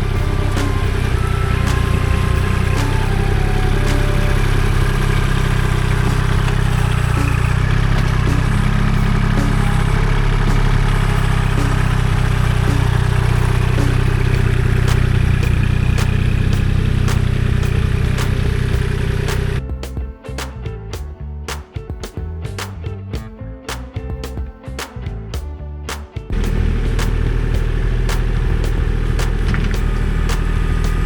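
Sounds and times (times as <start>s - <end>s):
tractor diesel engine running: 0.0s - 19.6s, 26.3s - 31.0s.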